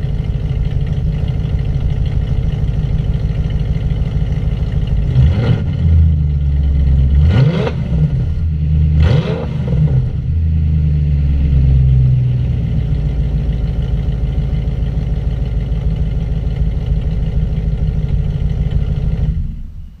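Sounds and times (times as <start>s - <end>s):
car engine revving: 0.0s - 14.3s
car engine idling: 0.0s - 20.0s.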